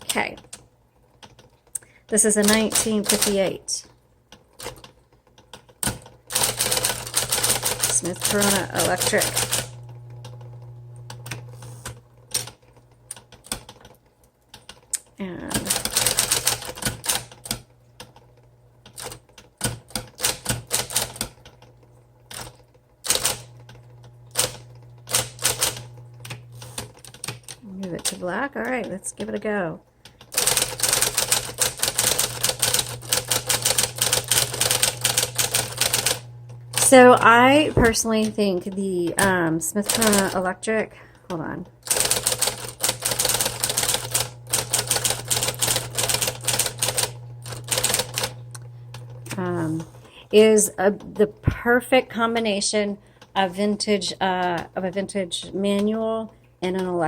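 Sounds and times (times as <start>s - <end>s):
typewriter keys clacking: 4.6s - 9.7s, 18.9s - 21.6s, 24.4s - 28.9s, 30.3s - 36.2s, 39.2s - 40.4s, 41.8s - 48.3s
electric motor hum: 6.9s - 12.3s, 23.1s - 27.0s, 30.4s - 38.4s, 42.0s - 50.2s
typewriter type bars striking: 30.3s - 36.2s, 41.9s - 48.3s.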